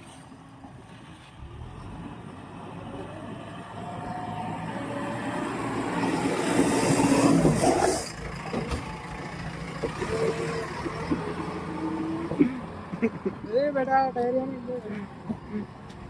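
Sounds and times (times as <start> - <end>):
diesel engine running: 1.4 - 16.0.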